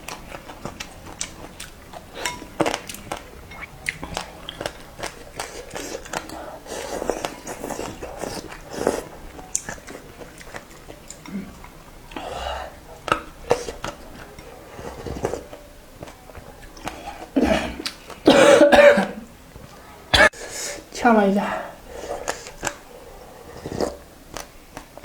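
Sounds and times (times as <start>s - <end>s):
person chewing noodles: 0.0s - 18.3s, 21.8s - 25.0s
mouth clicks and smacks: 15.0s - 18.3s.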